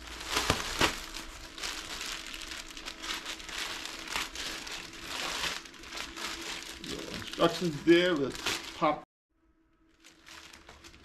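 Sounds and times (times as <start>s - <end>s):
packaging crinkling and rustling: 0.0s - 9.0s, 9.9s - 11.0s.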